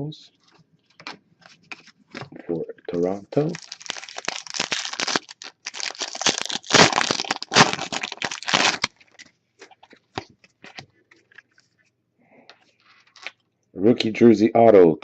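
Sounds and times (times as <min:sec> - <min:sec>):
foil wrapper torn and crinkled: 0:03.5 - 0:09.2.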